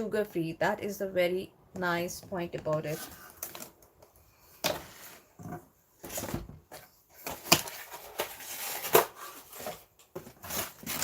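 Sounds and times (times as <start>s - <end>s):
packaging rustling: 7.2s - 11.0s.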